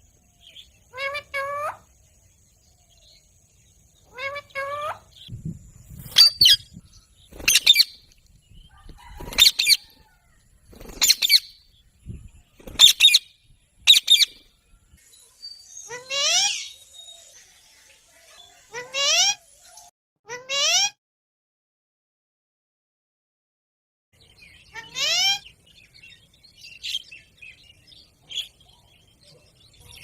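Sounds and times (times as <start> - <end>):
parrot squawks: 0.9 - 1.8, 4.1 - 5.1, 15.9 - 16.8, 18.3 - 19.4, 20.3 - 21.0, 24.7 - 25.4.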